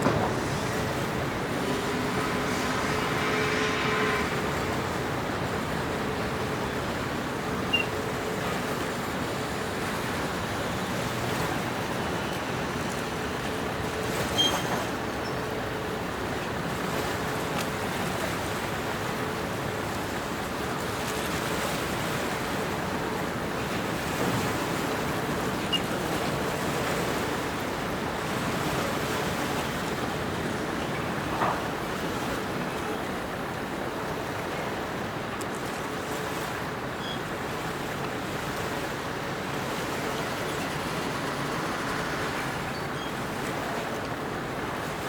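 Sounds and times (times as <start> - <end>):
water washing: 0.0 - 13.9
distant port noise: 0.0 - 45.0
distant traffic: 0.0 - 45.0
water and waves: 0.0 - 45.0.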